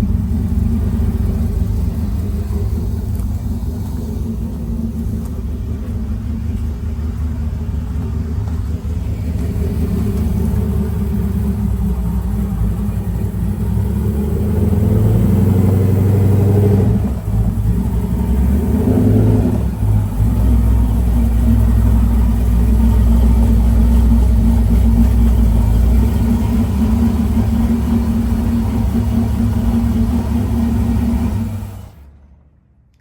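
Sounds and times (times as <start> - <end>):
car engine rumble: 0.0 - 33.0.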